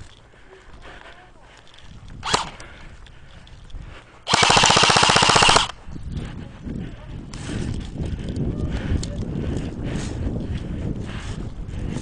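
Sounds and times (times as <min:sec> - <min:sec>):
airsoft gun full-auto burst: 0:02.2 - 0:02.5, 0:04.3 - 0:05.7.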